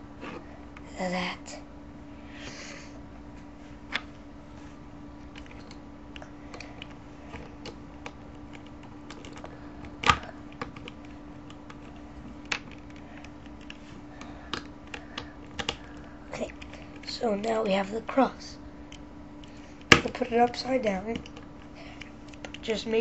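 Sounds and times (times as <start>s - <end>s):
plastic puzzle cube clicking: 14.5s - 15.8s.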